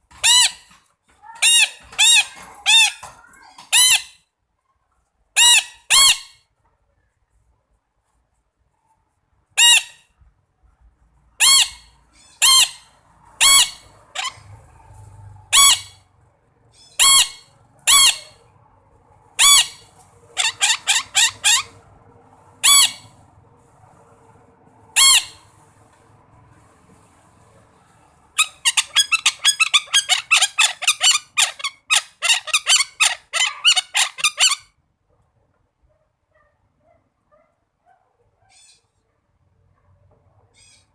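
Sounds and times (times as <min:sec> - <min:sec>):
parakeet calling: 0:05.4 - 0:06.4, 0:11.4 - 0:14.5, 0:15.5 - 0:16.0, 0:16.8 - 0:18.4, 0:19.4 - 0:21.8, 0:22.6 - 0:23.1, 0:25.0 - 0:25.4, 0:28.4 - 0:34.7.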